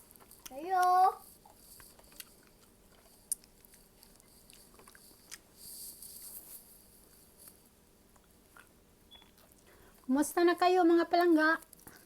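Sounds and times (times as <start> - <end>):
chewing with wet mouth clicks: 1.4 - 5.5, 8.1 - 10.1.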